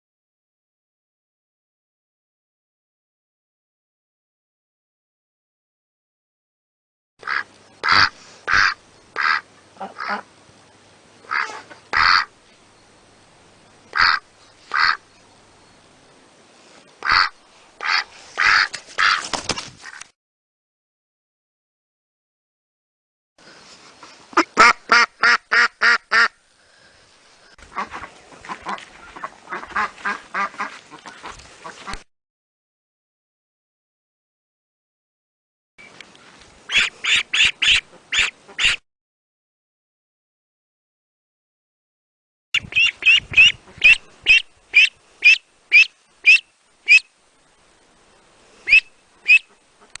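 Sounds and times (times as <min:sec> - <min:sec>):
duck quacking: 0:07.2 - 0:10.3, 0:11.3 - 0:12.3, 0:13.9 - 0:15.0, 0:17.0 - 0:20.0, 0:24.3 - 0:26.4, 0:27.7 - 0:32.0, 0:36.7 - 0:38.8, 0:42.6 - 0:47.1, 0:48.7 - 0:50.0.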